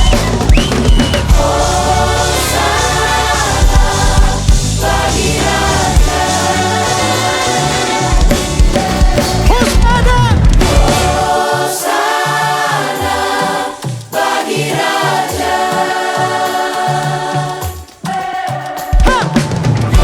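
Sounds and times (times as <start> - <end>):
band with drums and bass: 0.0 - 11.3, 16.9 - 20.0
choir singing harmonies: 0.0 - 20.0.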